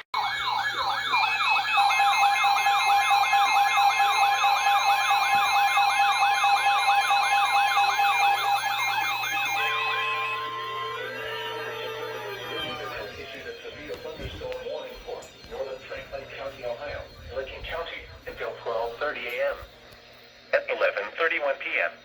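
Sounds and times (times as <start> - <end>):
electronic yelping siren: 0.0 - 19.8
fast beeping: 0.6 - 19.8
steady alert tones: 4.8 - 19.8.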